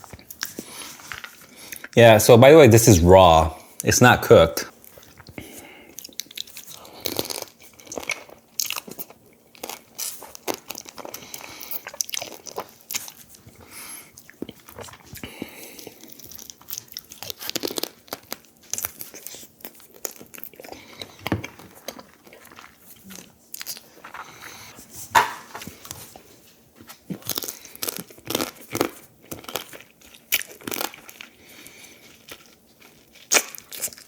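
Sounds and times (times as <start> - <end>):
chewing: 0.0 - 2.0, 4.8 - 24.8, 25.6 - 34.0
crab shell crunching while eating: 4.8 - 24.8, 26.9 - 34.0.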